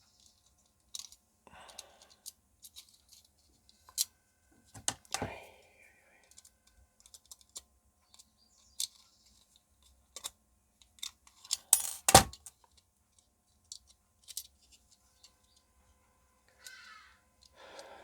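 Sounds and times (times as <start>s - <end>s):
small clicks and taps of clock parts: 0.2s - 4.1s, 6.2s - 11.8s, 12.4s - 15.7s.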